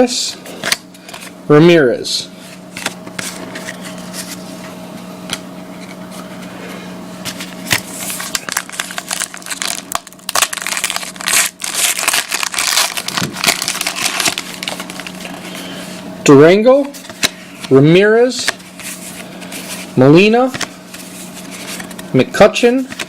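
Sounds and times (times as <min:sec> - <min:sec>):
steady low hum: 0:00.0 - 0:23.0
cards rustling: 0:02.4 - 0:04.6, 0:07.2 - 0:17.8, 0:18.4 - 0:23.0
wrapper crinkling and tearing: 0:07.8 - 0:15.5.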